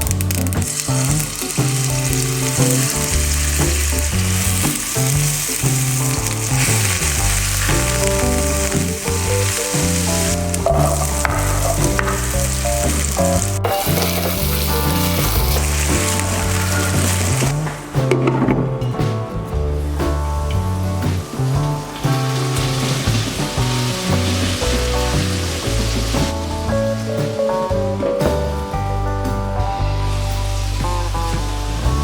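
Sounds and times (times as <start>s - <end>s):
background music with bass line: 0.0s - 32.0s
food sizzling in oil: 0.2s - 17.6s
stirring in a pan: 0.3s - 17.6s.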